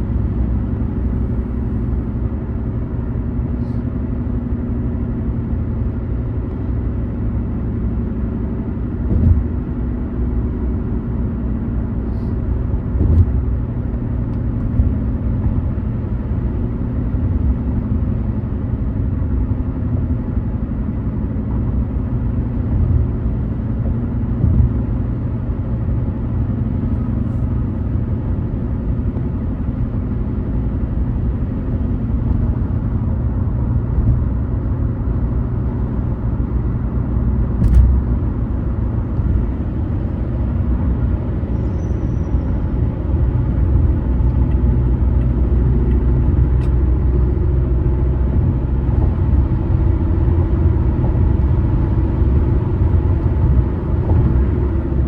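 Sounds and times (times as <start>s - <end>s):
in-car road noise: 0.0s - 55.0s
car bumps: 9.0s - 9.8s, 12.8s - 15.8s, 23.8s - 25.0s, 37.4s - 39.6s.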